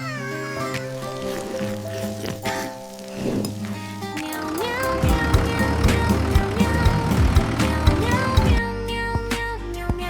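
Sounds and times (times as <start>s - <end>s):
low drum thumps: 5.0s - 8.6s.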